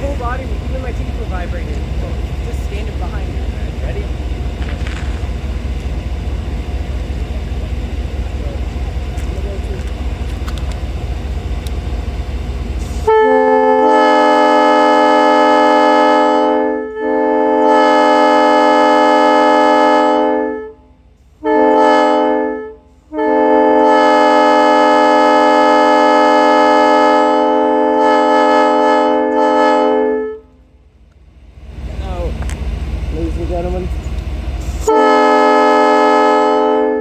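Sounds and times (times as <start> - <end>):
locomotive air horn blasts: 12.8 - 30.6, 34.8 - 37.0.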